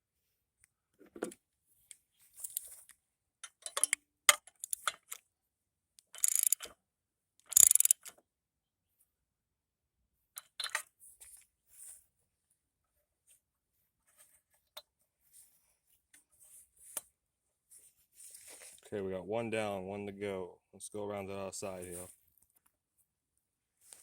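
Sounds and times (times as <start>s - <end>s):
socket wrench clicking: 3.6s - 5.2s, 6.0s - 6.7s, 7.4s - 8.1s.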